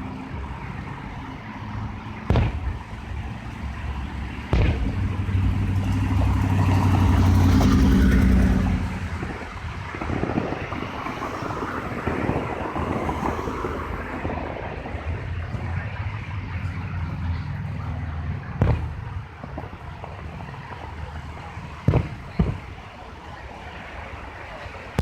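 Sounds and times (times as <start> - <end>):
road noise: 0.0 - 25.0
vehicle engine humming: 0.0 - 25.0
firework boom: 2.3 - 3.0, 4.5 - 7.5, 18.6 - 20.8, 21.8 - 22.8.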